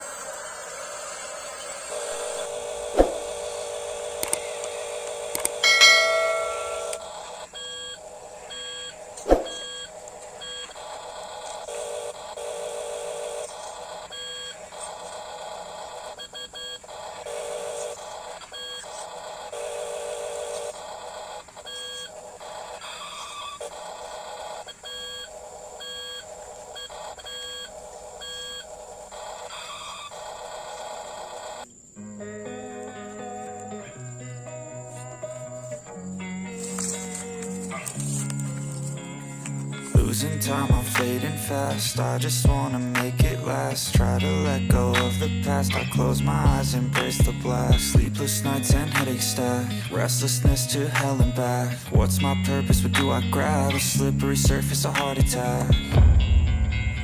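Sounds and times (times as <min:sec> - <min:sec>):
electronic beeping tones: 0:01.9 - 0:04.6, 0:05.6 - 0:11.8, 0:13.4 - 0:19.6, 0:20.4 - 0:31.6
sharp click: 0:04.2 - 0:04.7, 0:40.9 - 0:41.2, 0:47.0 - 0:47.2, 0:49.0 - 0:49.2.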